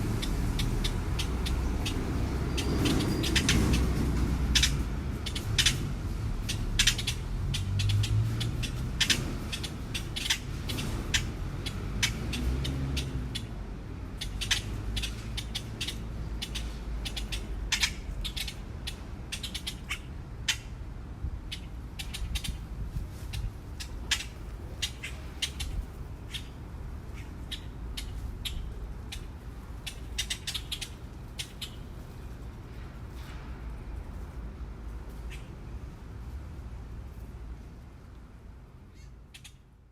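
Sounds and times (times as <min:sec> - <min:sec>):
magpies rasping calls: 0:00.0 - 0:20.8, 0:21.5 - 0:22.6, 0:23.3 - 0:31.9, 0:38.9 - 0:39.6
city traffic rumble: 0:00.0 - 0:39.9.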